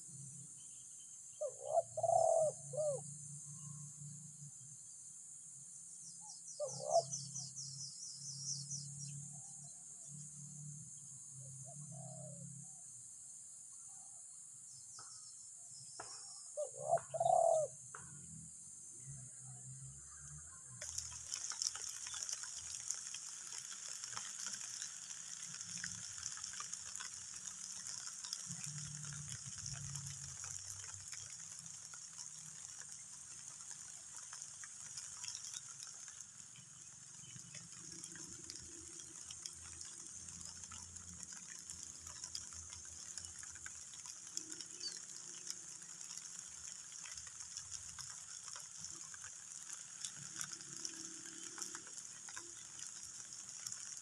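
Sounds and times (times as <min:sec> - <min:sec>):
rain falling: 0:20.8 - 0:54.0.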